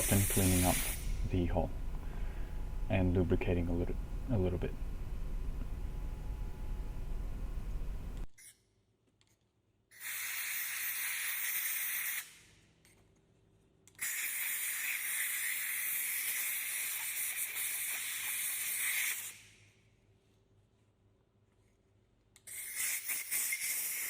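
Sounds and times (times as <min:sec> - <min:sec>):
hissing pressurised spray: 0:00.0 - 0:01.2.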